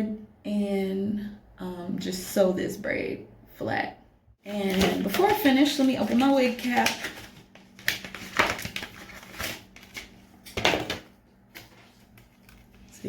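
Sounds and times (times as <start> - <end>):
wig cap rustling and crinkling: 4.5 - 13.0.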